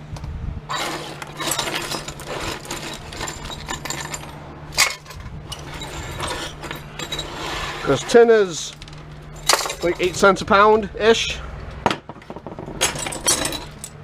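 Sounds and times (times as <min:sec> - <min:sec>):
sheet steel scrap clattering: 0:00.7 - 0:10.4.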